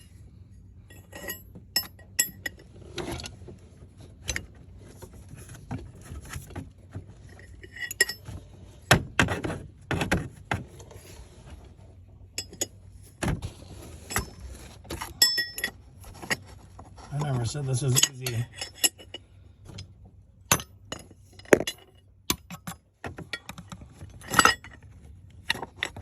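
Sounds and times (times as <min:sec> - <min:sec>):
metal tools clinking on metal: 0:12.4 - 0:12.7, 0:15.1 - 0:16.4, 0:17.1 - 0:19.3, 0:24.2 - 0:24.8.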